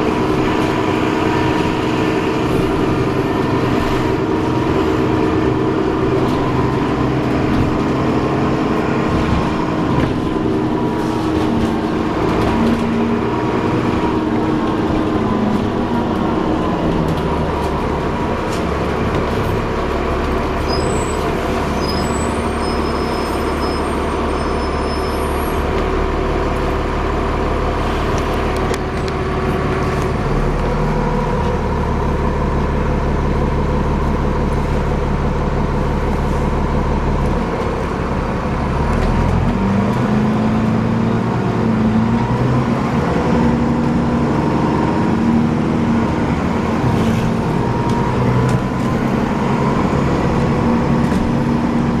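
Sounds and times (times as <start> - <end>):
bus engine running: 0.0 - 52.0
short high squeaks: 20.6 - 25.7.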